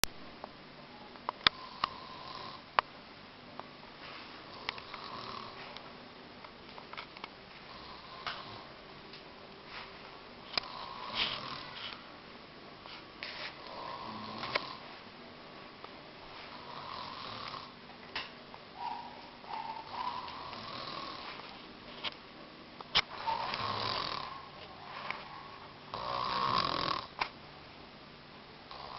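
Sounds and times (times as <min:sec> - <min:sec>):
man snoring: 0:01.5 - 0:02.6, 0:04.5 - 0:05.6, 0:07.7 - 0:08.7, 0:10.6 - 0:11.8, 0:13.6 - 0:14.8, 0:16.5 - 0:17.7, 0:20.2 - 0:21.3, 0:23.2 - 0:24.4, 0:25.9 - 0:27.1, 0:28.7 - 0:28.9.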